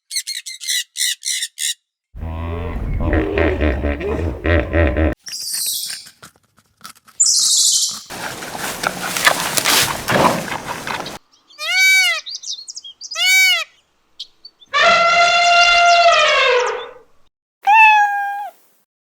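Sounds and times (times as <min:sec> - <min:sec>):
animal hissing: 0:08.1 - 0:11.2
animal calls rising and falling: 0:14.7 - 0:17.0.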